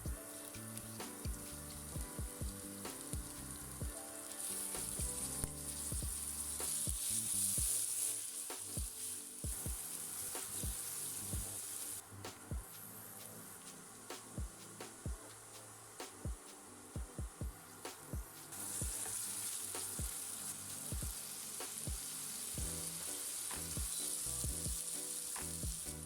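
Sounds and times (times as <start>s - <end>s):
food frying in hot oil: 0.0s - 12.0s, 18.5s - 26.0s.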